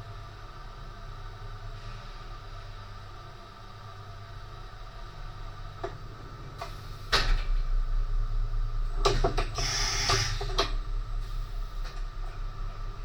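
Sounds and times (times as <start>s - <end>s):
low machine hum: 0.0s - 13.0s
sharp clicks and knocks: 9.0s - 10.8s.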